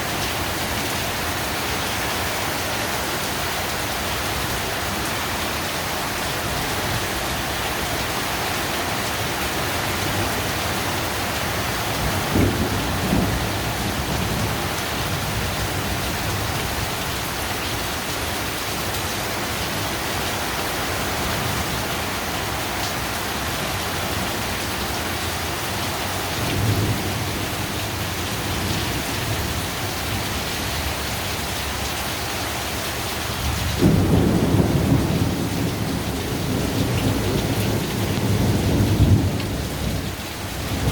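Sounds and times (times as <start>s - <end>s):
heavy rain pouring: 0.0s - 40.9s
thunder rumbling: 9.1s - 17.7s, 33.4s - 40.9s.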